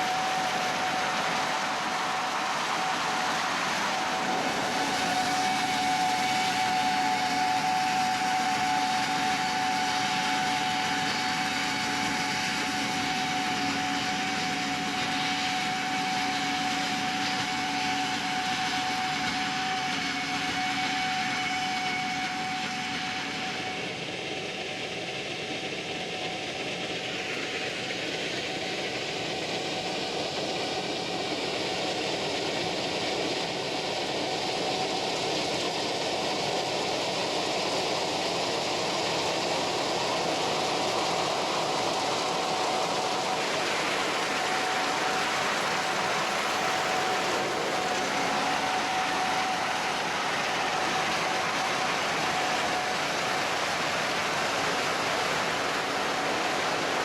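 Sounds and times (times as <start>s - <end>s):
combine harvester running: 0.0s - 18.4s, 23.6s - 57.0s
steady mechanical whine: 0.0s - 57.0s.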